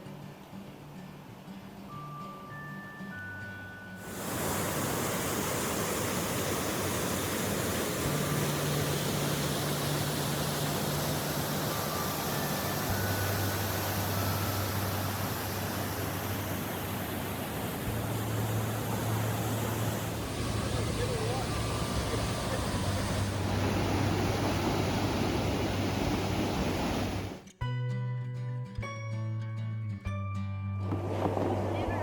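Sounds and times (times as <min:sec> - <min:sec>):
whitewater rushing on a creek: 0:04.0 - 0:27.4.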